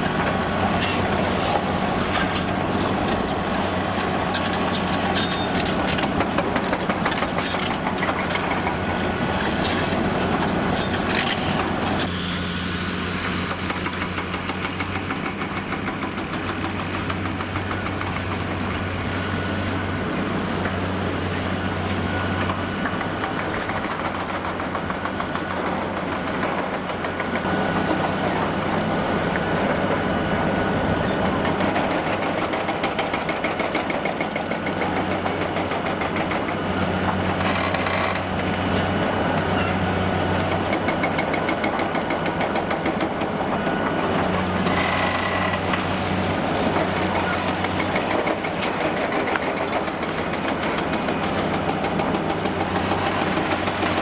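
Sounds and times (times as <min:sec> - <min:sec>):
excavator diesel engine: 0:00.0 - 0:54.0
harsh machine noise: 0:26.4 - 0:54.0.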